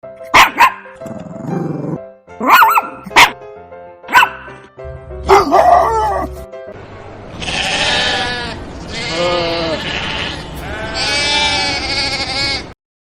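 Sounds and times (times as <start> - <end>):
background music: 0.0 - 7.4
dog barking: 0.3 - 0.9, 2.4 - 3.4, 4.1 - 4.6, 5.3 - 6.2.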